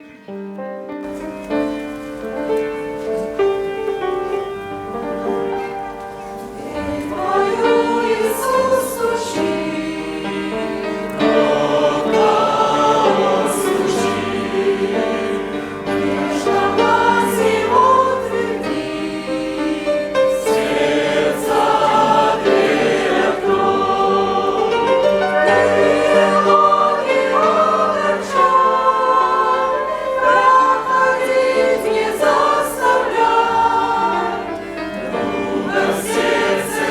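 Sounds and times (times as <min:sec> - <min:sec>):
congregation singing a hymn: 0:01.0 - 0:36.9.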